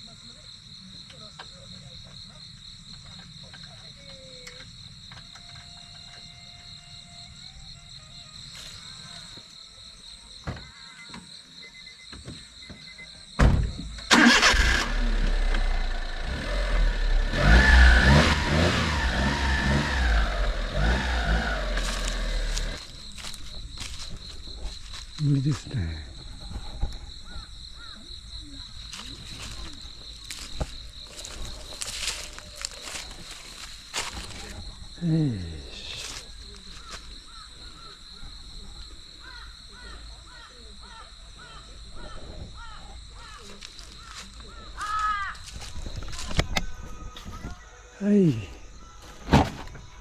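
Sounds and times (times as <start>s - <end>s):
insects droning: 0.0s - 50.0s
engine revving: 14.1s - 23.3s.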